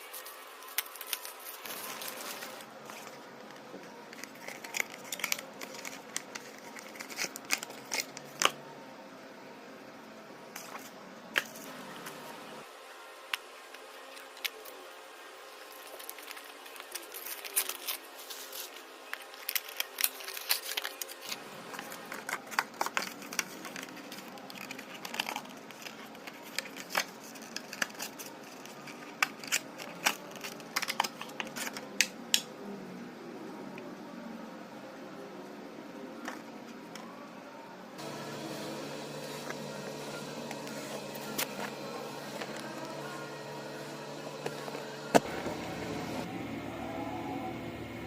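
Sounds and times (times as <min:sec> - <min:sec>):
plastic and cardboard crinkling: 0:00.0 - 0:08.6, 0:15.6 - 0:32.0.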